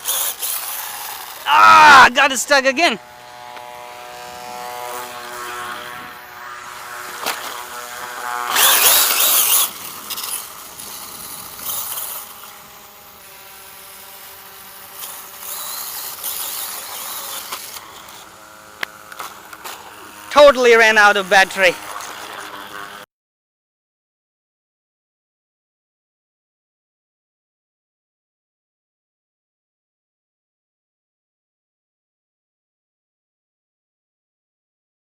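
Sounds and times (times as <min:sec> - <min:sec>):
electric motor whining: 0:00.0 - 0:23.0.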